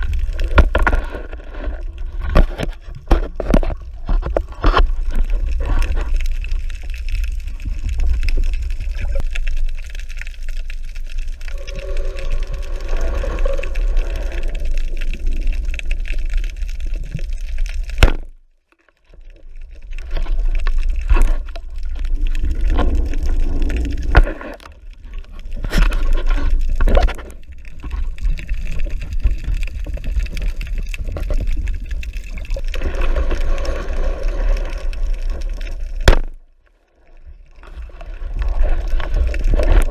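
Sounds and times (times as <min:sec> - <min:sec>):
underwater low rumble: 0:00.0 - 0:39.9
water gurgling and bubbling: 0:11.2 - 0:17.6, 0:19.7 - 0:36.0, 0:37.4 - 0:39.9.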